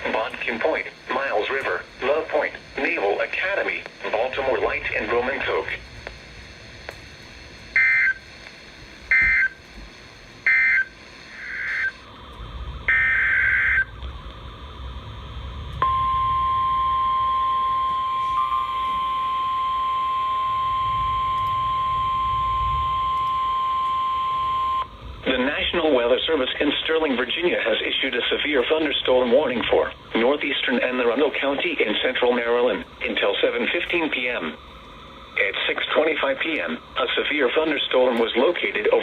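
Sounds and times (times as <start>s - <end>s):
steady single-tone warning alarm: 7.7s - 8.3s, 9.0s - 9.7s, 10.4s - 39.0s.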